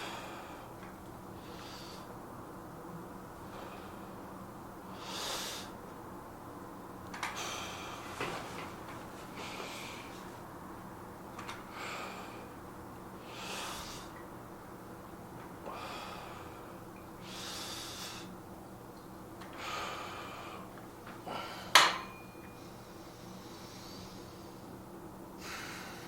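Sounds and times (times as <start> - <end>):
man breathing hard: 1.4 - 2.1, 5.0 - 5.8, 7.3 - 8.1, 15.7 - 18.4, 19.6 - 21.8, 25.4 - 26.0
metal clink with ringing: 21.8 - 22.4.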